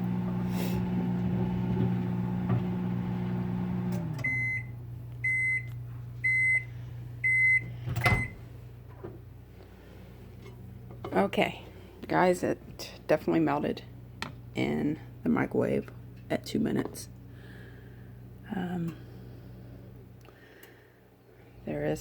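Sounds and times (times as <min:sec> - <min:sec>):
microwave oven humming: 0:00.0 - 0:12.3, 0:13.4 - 0:22.0
high microwave beeps: 0:04.1 - 0:08.4.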